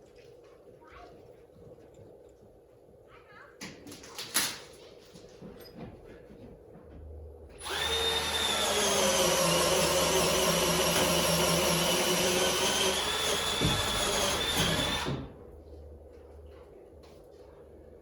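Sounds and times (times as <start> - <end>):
power drill whining: 7.6 - 15.3.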